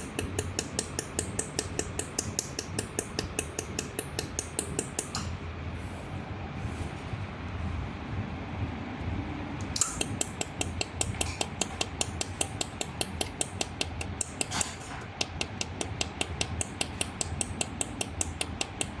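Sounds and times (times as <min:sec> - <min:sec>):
laser welder clicking: 0:00.0 - 0:05.3, 0:09.6 - 0:19.0
low steady hum: 0:00.0 - 0:19.0.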